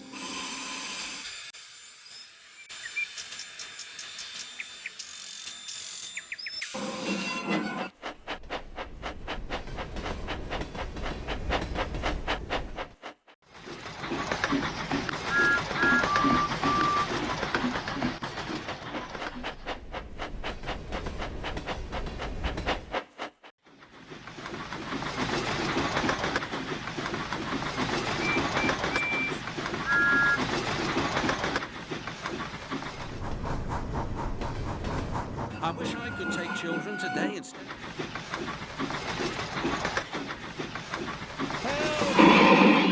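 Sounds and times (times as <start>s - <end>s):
steam locomotive chuffing: 2.9s - 42.9s
wheel clatter: 7.9s - 33.7s.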